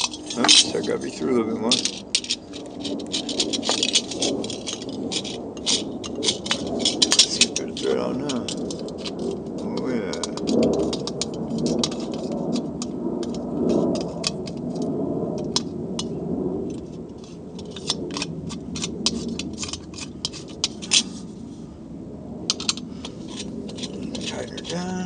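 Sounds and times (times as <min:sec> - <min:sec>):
low background noise: 0:00.0 - 0:14.5.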